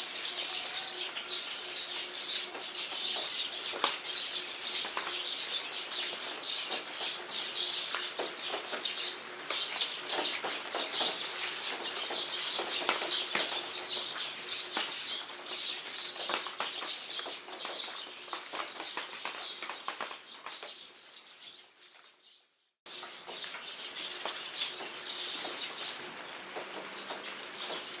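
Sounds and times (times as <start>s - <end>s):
rain pattering: 0.0s - 21.1s, 22.9s - 28.0s
birds chirping: 0.0s - 28.0s.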